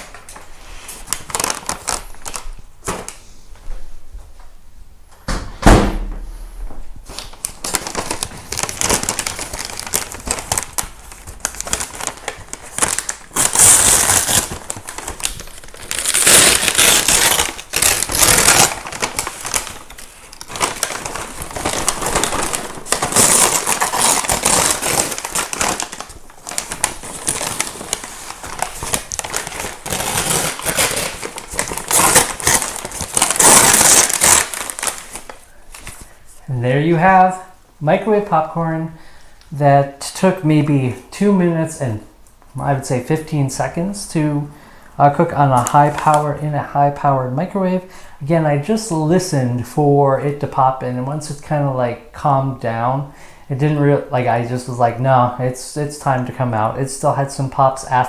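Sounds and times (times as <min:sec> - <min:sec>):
popcorn crackling in paper bag: 0:01.0 - 0:02.4, 0:07.1 - 0:36.1.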